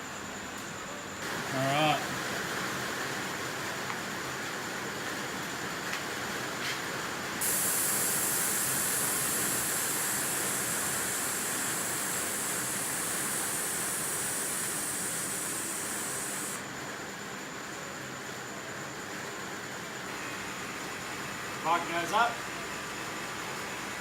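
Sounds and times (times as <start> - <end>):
compressed air hissing: 7.4 - 16.7.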